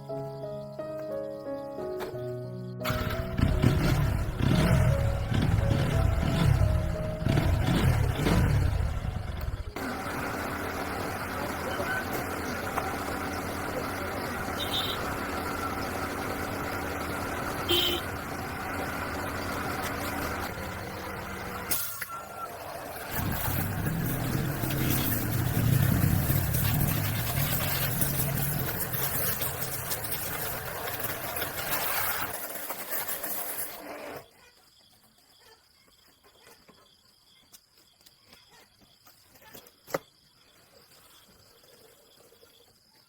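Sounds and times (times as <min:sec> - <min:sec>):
faint crickets: 0:00.0 - 0:03.2, 0:10.3 - 0:43.0
motorbike engine idling: 0:02.8 - 0:32.4.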